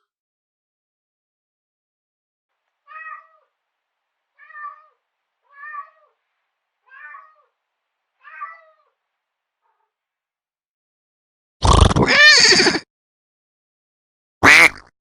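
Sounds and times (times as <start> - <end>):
cat meowing: 2.8 - 3.5, 4.3 - 6.2, 6.8 - 7.6, 8.2 - 9.0, 12.0 - 12.8.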